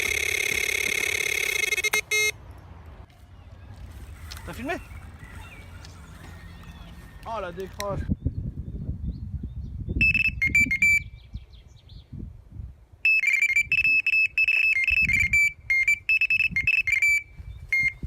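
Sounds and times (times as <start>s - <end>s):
electronic bite alarm beeping: 0.0s - 2.4s, 10.0s - 11.1s, 13.1s - 18.0s.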